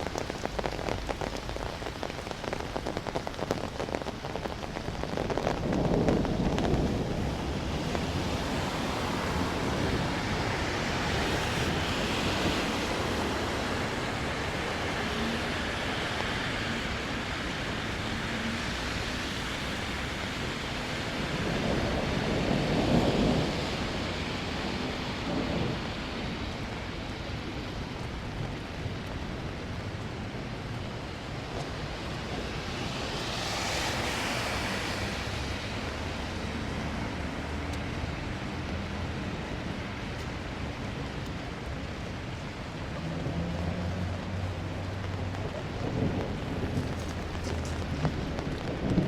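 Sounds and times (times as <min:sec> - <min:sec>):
low thunder rumble: 0:00.0 - 0:14.4, 0:20.8 - 0:29.4, 0:43.0 - 0:49.0
steady rain falling: 0:00.0 - 0:49.0.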